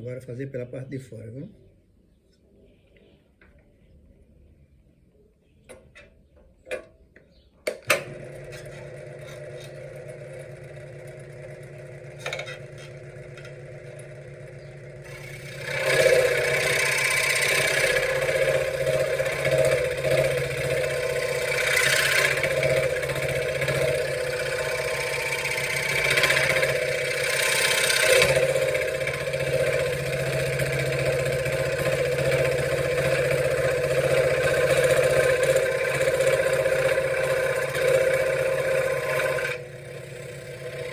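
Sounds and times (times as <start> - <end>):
clicks: 5.6 - 9.8
scroll saw motor running: 7.9 - 40.9
saw blade cutting wood: 8.4 - 10.0, 12.1 - 14.0, 15.0 - 40.9.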